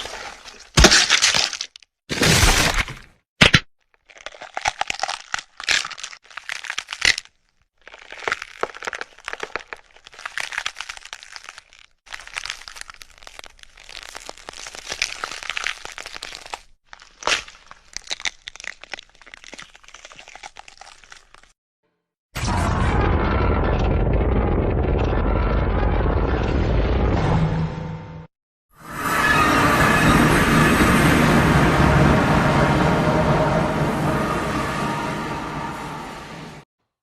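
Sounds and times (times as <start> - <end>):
crackling and crunching: 0.0 - 21.6.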